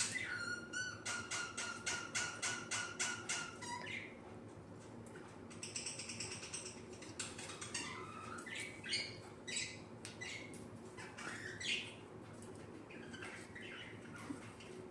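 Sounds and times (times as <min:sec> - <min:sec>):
cockatiel chirping and squawking: 0:00.0 - 0:04.1, 0:05.7 - 0:12.0.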